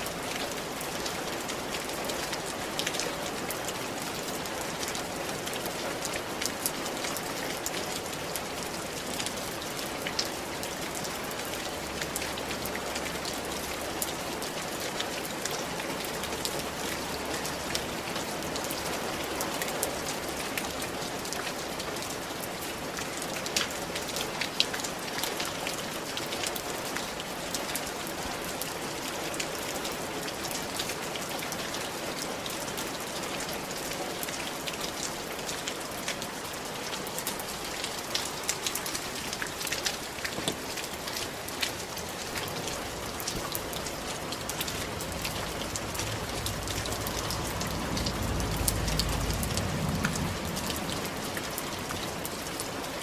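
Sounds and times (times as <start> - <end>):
rain on roof tiles: 0.0 - 53.0
low rumble: 44.8 - 51.2.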